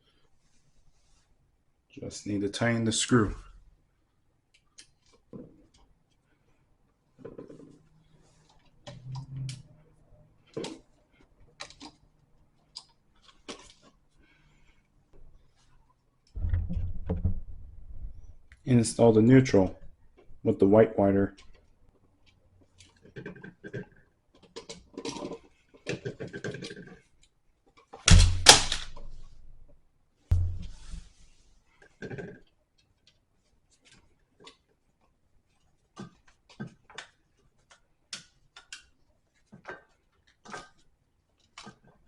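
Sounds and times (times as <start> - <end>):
rustling and knocking handling noise: 6.9 - 8.8, 15.1 - 18.6, 21.4 - 37.9.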